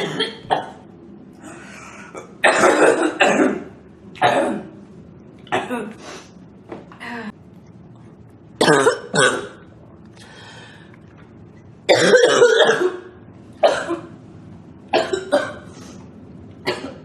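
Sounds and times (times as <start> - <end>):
woman coughing: 0.0 - 0.8, 2.4 - 4.7, 5.5 - 6.0, 8.6 - 9.6, 11.9 - 14.1, 16.7 - 17.0.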